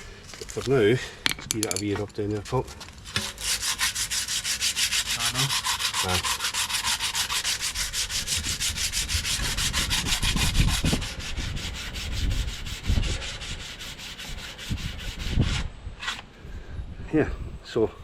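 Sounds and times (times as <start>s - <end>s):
sandpaper sanding metal rim: 3.0s - 16.2s.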